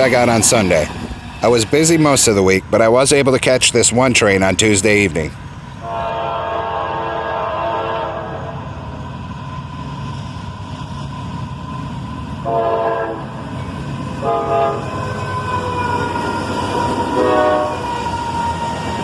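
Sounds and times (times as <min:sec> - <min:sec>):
freight train rumble: 0:00.0 - 0:19.0
locomotive air horn blasts: 0:05.8 - 0:08.6, 0:12.5 - 0:13.3, 0:14.2 - 0:14.9, 0:17.1 - 0:17.9.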